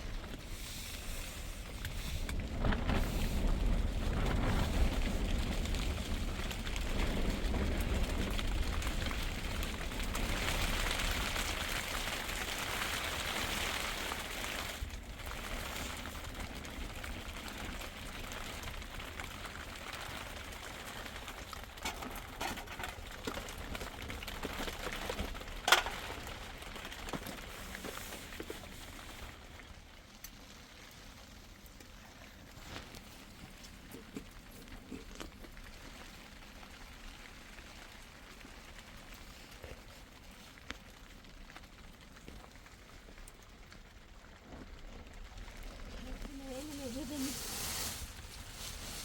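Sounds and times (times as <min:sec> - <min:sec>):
rain falling: 0:00.0 - 0:49.0.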